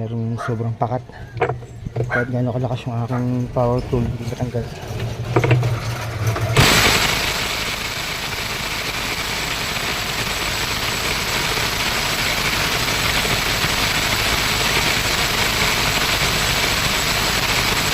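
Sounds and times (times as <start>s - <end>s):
electric power tool running: 4.8s - 17.9s.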